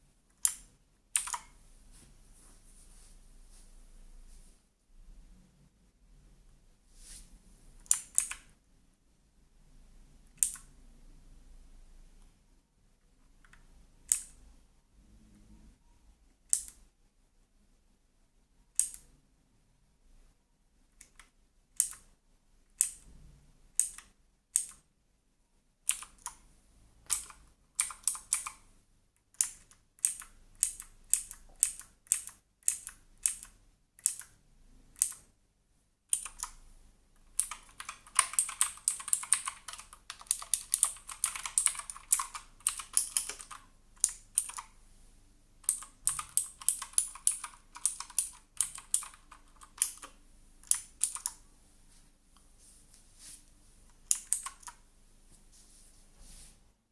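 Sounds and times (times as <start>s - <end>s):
mechanical keyboard typing: 0.3s - 1.5s, 7.8s - 8.5s, 10.4s - 10.8s, 13.4s - 14.4s, 23.7s - 24.9s, 25.9s - 26.4s, 27.0s - 35.3s, 36.1s - 36.6s, 37.2s - 44.8s, 45.6s - 51.4s, 54.0s - 54.8s.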